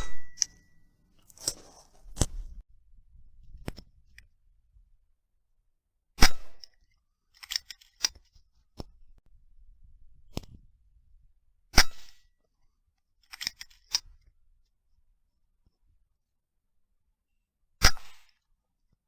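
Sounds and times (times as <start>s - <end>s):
rifle bolt metallic clicks: 6.2s - 8.3s, 13.3s - 14.1s.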